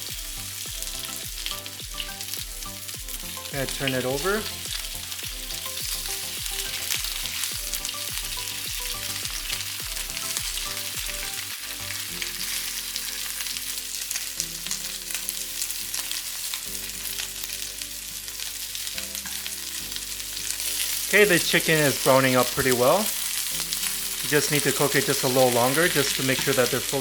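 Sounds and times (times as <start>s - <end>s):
chicken frying in oil: 0.0s - 27.0s.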